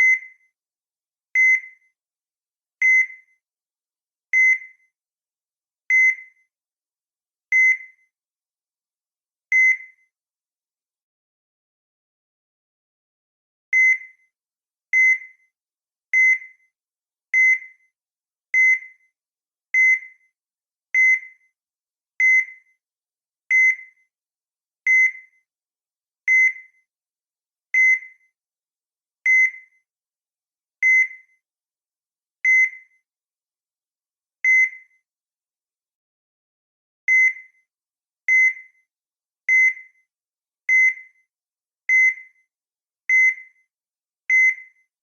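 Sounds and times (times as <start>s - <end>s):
heart monitor beeping: 1.4s - 1.7s, 2.8s - 3.2s, 4.4s - 4.7s, 5.9s - 6.2s, 7.5s - 8.0s, 9.5s - 10.0s, 13.8s - 14.1s, 15.0s - 15.3s, 19.8s - 20.1s, 22.2s - 22.6s, 23.5s - 23.9s, 24.9s - 25.2s, 27.8s - 28.1s, 29.3s - 29.6s, 30.8s - 31.2s, 32.4s - 32.8s, 34.4s - 34.9s, 37.1s - 37.5s, 38.3s - 38.7s, 39.5s - 39.8s, 40.7s - 41.0s, 41.9s - 42.2s, 43.1s - 43.4s, 44.3s - 44.7s.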